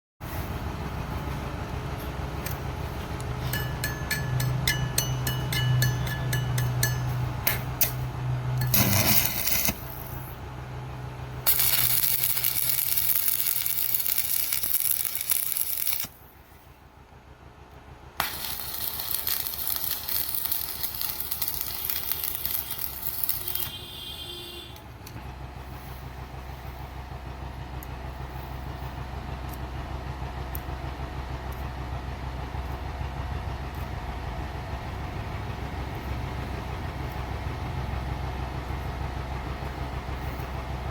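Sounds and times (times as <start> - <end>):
low machine hum: 0.2 - 40.9
low electrical hum: 0.3 - 40.9
loud hissing crackle: 8.7 - 10.4, 11.4 - 16.2, 18.2 - 23.9
faint regular ticking: 18.2 - 23.7.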